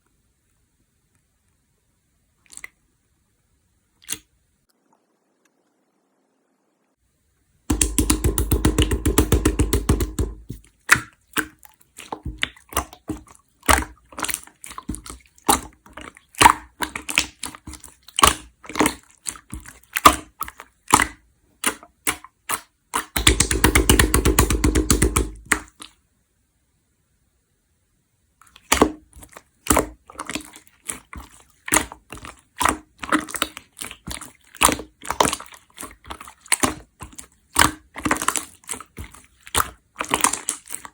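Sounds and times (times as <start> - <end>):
slime squished by hand: 7.7 - 26.0, 28.5 - 40.9.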